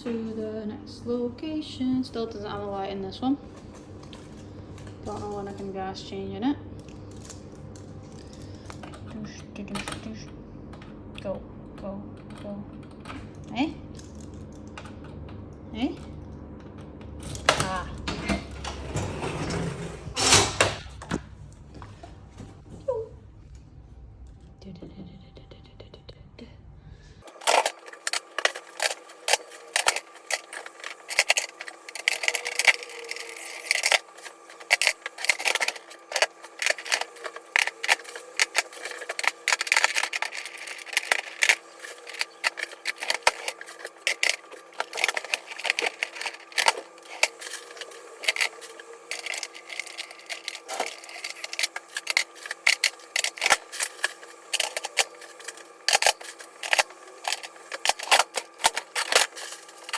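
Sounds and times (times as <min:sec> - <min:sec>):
faint steady hum: 0:21.0 - 0:59.9
small hard objects clattering: 0:27.2 - 0:59.9.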